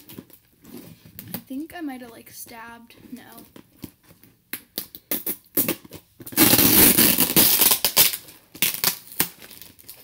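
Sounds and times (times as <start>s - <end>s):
plastic packaging crinkling: 5.6s - 10.0s.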